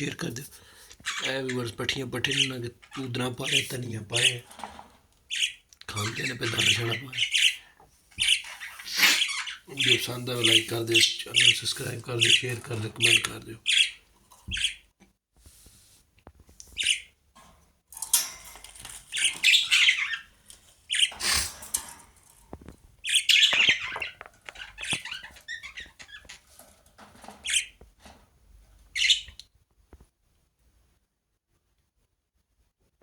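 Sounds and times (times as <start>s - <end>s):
parrots chirping and squawking: 0.7s - 14.9s, 16.7s - 28.2s, 28.8s - 29.4s.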